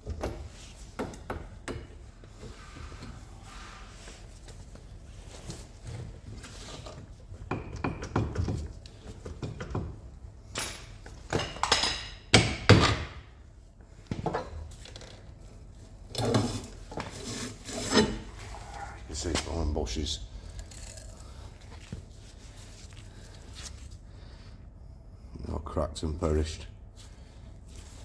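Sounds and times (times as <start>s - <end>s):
tools clanking on metal parts: 10.5s - 12.3s.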